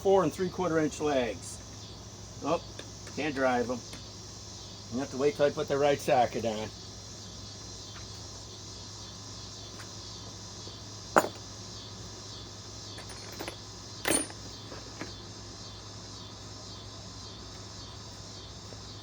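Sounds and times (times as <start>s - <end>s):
crickets chirring: 0.0s - 19.0s.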